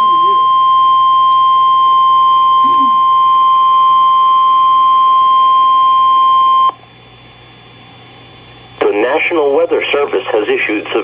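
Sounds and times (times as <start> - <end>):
steady warning alarm tone: 0.0 - 6.8.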